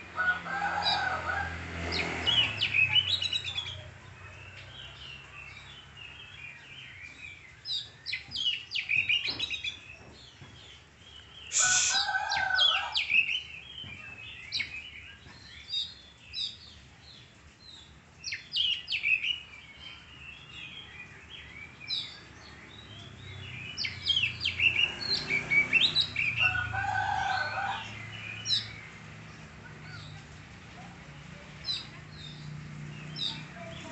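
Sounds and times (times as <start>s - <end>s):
lower bird call: 11.5s - 13.1s.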